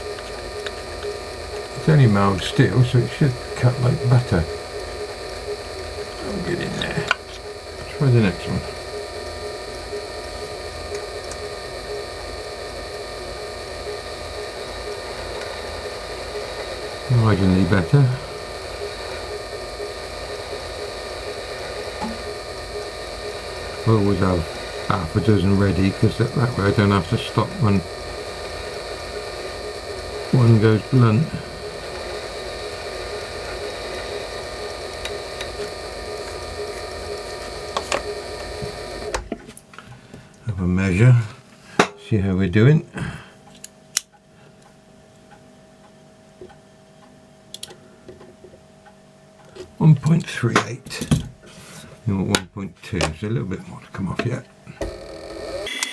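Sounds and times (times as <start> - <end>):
faint ticks: 0.0 - 39.2
lathe motor humming: 0.0 - 39.2, 54.8 - 55.9.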